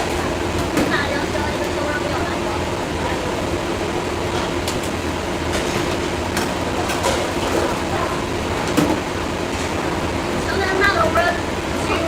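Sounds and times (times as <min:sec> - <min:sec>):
constant hum: 0:00.0 - 0:12.0
low rumble of machinery: 0:00.0 - 0:12.0.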